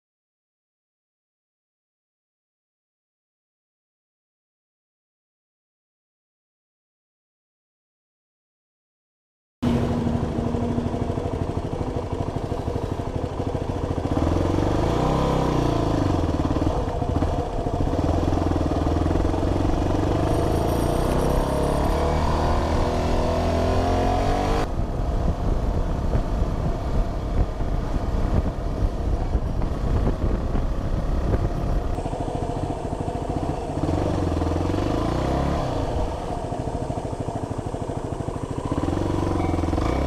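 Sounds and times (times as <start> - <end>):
vehicle engine accelerating: 9.6 - 40.0.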